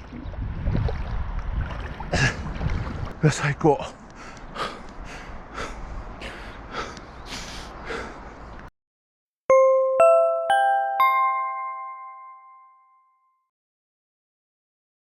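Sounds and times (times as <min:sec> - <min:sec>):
man gasping for breath: 0:04.2 - 0:08.3
bright ringing chime notes: 0:09.5 - 0:13.4.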